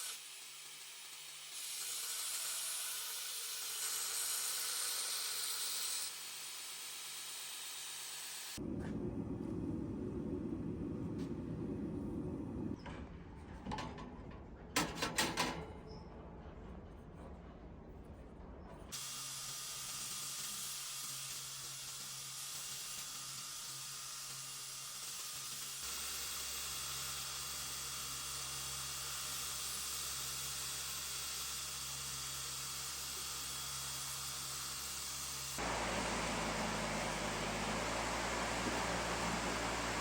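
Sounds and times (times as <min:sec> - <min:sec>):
low hum: 0:08.6 - 0:14.8
machine hissing: 0:35.6 - 0:40.0.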